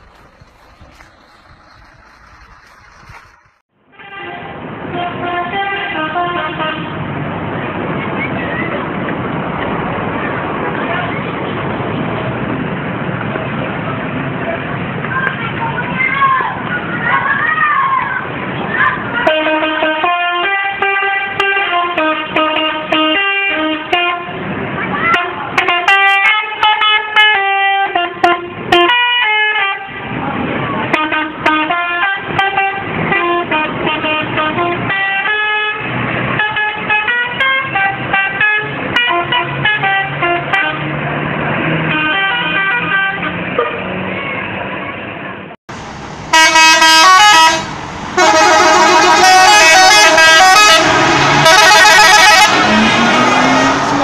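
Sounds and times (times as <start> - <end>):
musical air horn tunes: 46.3 - 53.7.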